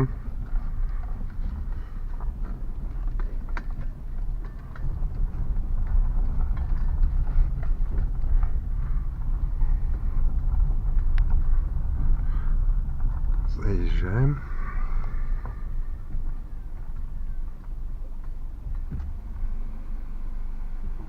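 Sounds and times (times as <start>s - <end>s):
car road rumble: 0.0s - 21.0s.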